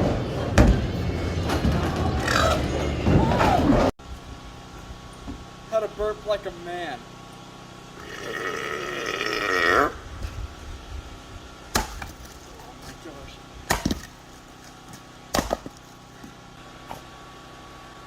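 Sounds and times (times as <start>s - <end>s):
man burping loudly: 8.0s - 10.0s.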